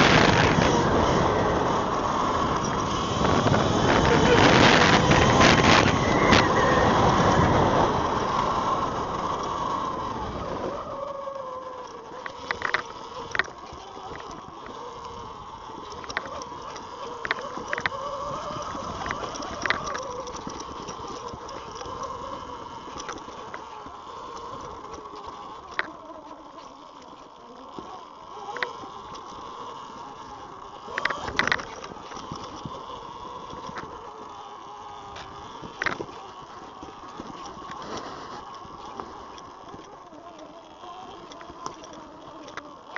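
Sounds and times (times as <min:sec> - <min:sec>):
wind rushing over microphone: 0:00.0 - 0:11.1
electric motor whine: 0:00.0 - 0:42.9
bike clicks and knocks: 0:11.8 - 0:42.9.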